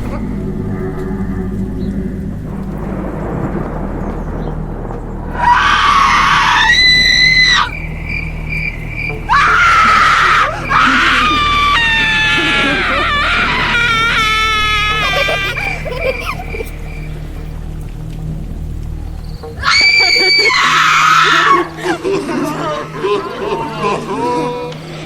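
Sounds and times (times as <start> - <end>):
low rumble: 0.0 - 25.0
high-pitched screams: 5.3 - 16.7, 19.6 - 24.8.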